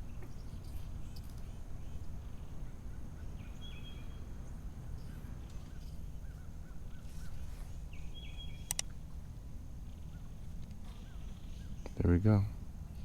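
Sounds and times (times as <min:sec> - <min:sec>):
birds calling: 0:00.0 - 0:13.0
low outdoor rumble: 0:00.0 - 0:13.0.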